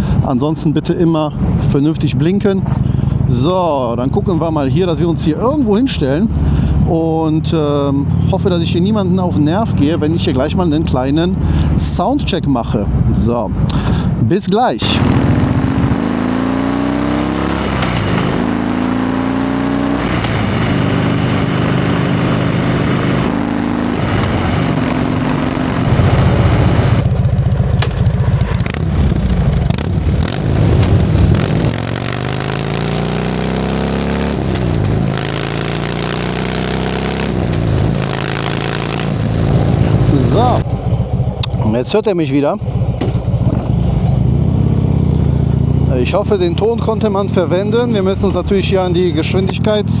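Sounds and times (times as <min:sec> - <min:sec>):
motorcycle engine accelerating: 0:00.0 - 0:12.2, 0:14.8 - 0:50.0
sharp clicks: 0:19.9 - 0:27.0, 0:27.8 - 0:41.6.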